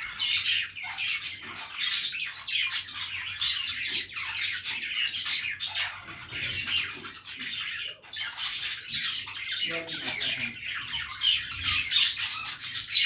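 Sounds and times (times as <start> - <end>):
budgerigars chirping: 0.0 - 13.0.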